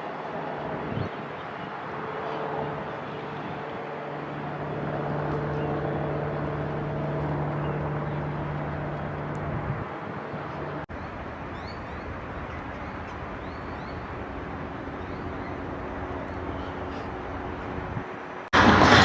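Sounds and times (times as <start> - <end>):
outdoor background noise: 0.0 - 19.0
engine humming: 4.4 - 19.0.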